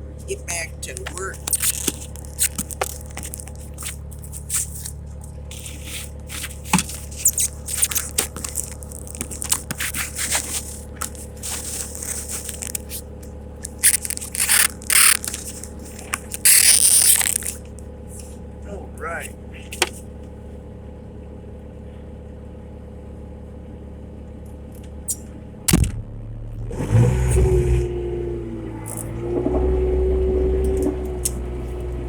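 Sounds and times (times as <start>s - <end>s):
low engine running: 0.0s - 32.0s
scraping clicks and knocks: 0.9s - 17.6s.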